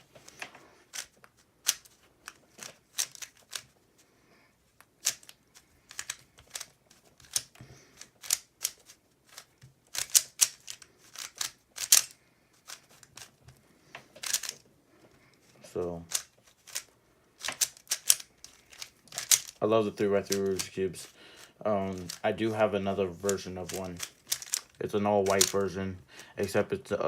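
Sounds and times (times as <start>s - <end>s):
puzzle cube plastic clicking: 0.2s - 3.7s, 4.8s - 13.4s, 14.1s - 14.6s, 16.0s - 19.6s, 20.2s - 20.7s, 21.4s - 22.2s, 23.2s - 25.6s.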